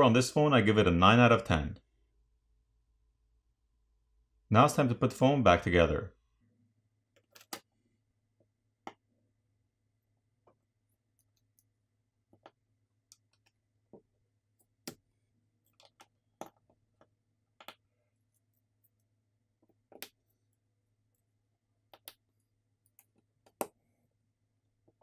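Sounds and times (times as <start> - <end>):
small sharp clicks and taps: 21.9 - 22.2.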